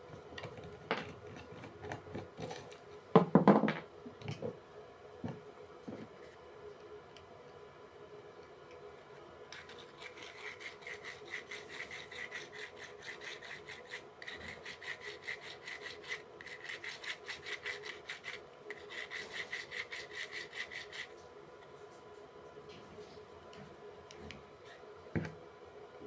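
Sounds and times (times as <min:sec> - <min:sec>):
sandpaper rubbing on metal: 0:09.6 - 0:21.1.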